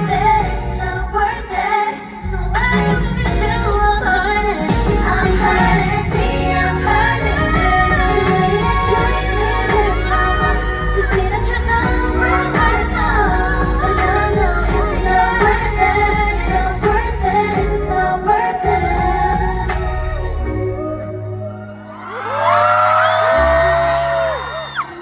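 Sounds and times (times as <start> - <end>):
women singing pop song: 0.0 - 25.0
backing track with heavy bass beat: 2.5 - 20.2.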